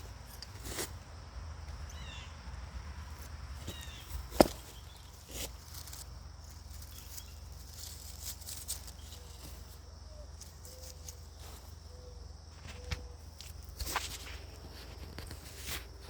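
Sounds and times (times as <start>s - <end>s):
low-pitched bird calls: 1.8s - 2.4s.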